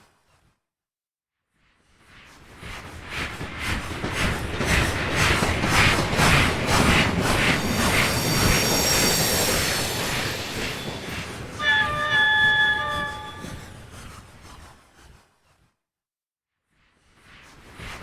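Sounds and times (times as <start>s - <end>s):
steam locomotive exhaust beats: 3.8s - 14.2s
high squeal: 7.0s - 14.2s
chime whistle: 7.3s - 14.1s.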